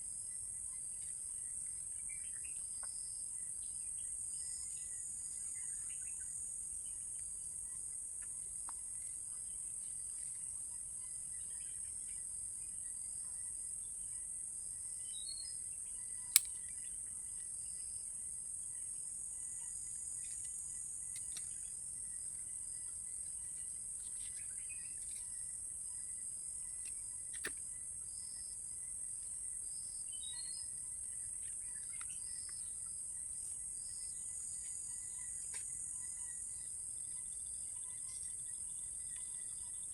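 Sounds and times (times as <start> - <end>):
crickets chirping: 0.1 - 39.9
sharp click: 16.3 - 16.6, 26.8 - 27.6
bird chirps: 29.8 - 30.8.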